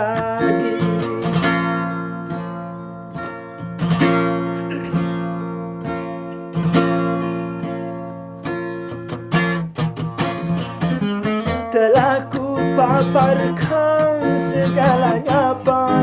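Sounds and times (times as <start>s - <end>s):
acoustic guitar strumming chords: 0.0s - 16.0s.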